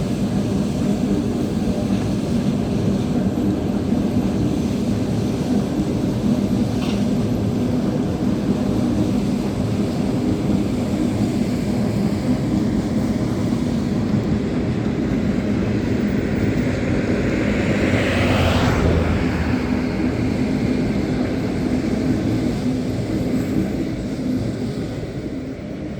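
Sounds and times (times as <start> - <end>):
passenger train rumbling past: 0.0 - 25.9.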